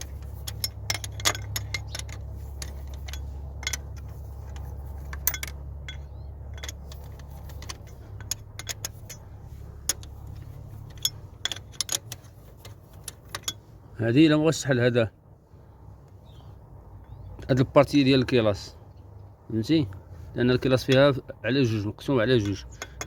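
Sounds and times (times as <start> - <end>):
metallic clinks of hand tools: 0.0 - 13.6, 22.3 - 23.0
steady low hum: 0.0 - 23.0.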